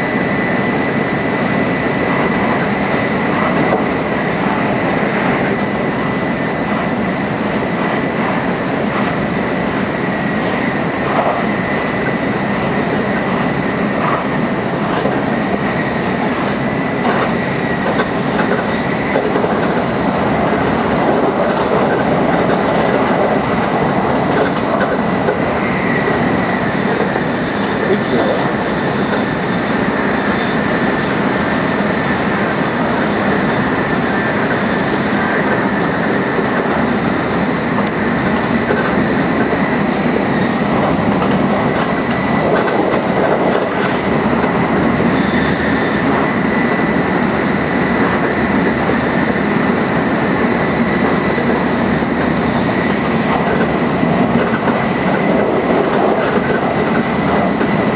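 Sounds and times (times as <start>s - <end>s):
high whine: 0.0s - 20.2s, 25.6s - 41.8s
train rushing rumble: 0.0s - 57.9s.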